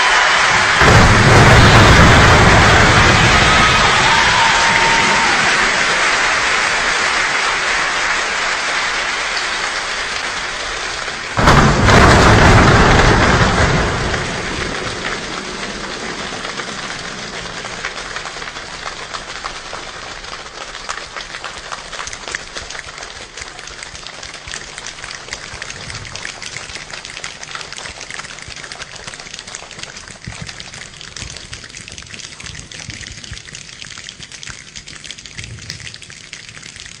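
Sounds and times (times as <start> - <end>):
people clapping and patting: 0.0 - 37.0.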